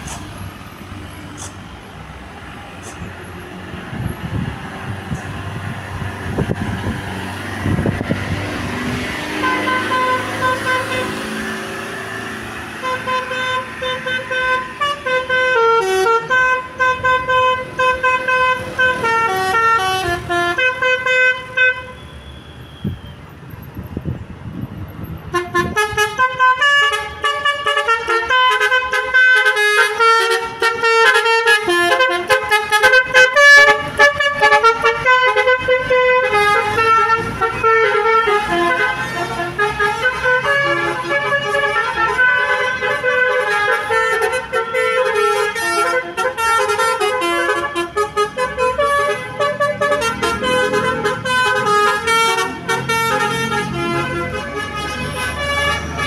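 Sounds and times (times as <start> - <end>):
musical vehicle horn melody: 9.2 - 11.9, 12.6 - 23.1, 25.3 - 56.0.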